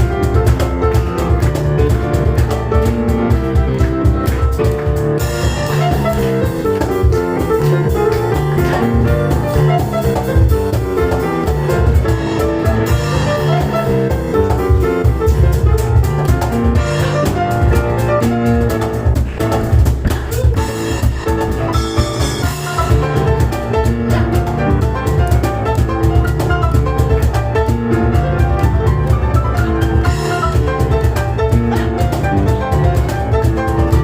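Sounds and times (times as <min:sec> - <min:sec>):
cajon percussion beat: 0:00.0 - 0:34.0
rapid piano runs: 0:00.0 - 0:34.0.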